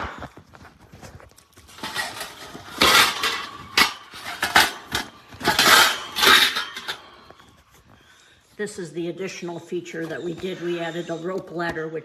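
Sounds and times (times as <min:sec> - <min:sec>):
metal pieces clinking: 0:01.7 - 0:07.3.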